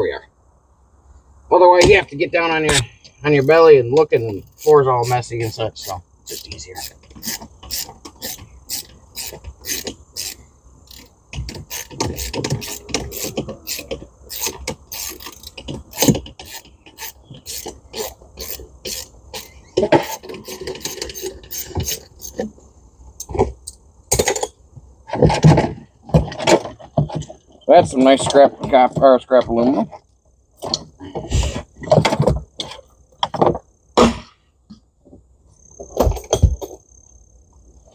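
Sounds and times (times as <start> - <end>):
socket ratchet clicking: 3.4 - 22.4.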